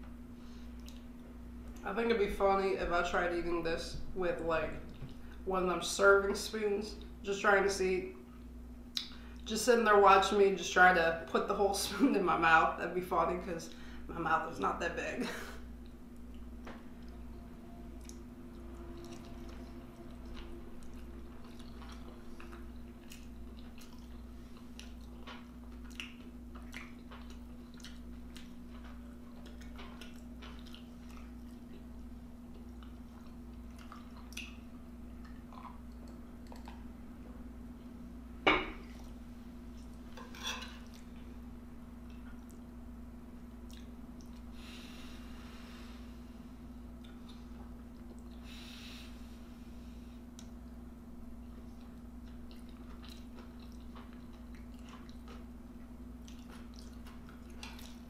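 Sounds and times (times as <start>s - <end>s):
chewing and eating: 0.6s - 1.8s, 18.8s - 37.9s, 38.8s - 41.4s, 42.0s - 42.7s, 43.5s - 44.5s, 46.9s - 48.6s, 50.2s - 58.0s
low hum: 13.7s - 58.0s.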